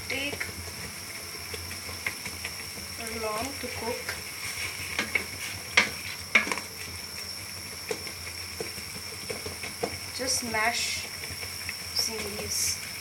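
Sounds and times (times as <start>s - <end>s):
boiling mixture sizzling: 0.0s - 13.0s
spoon scraping a cooking pan: 4.4s - 6.6s.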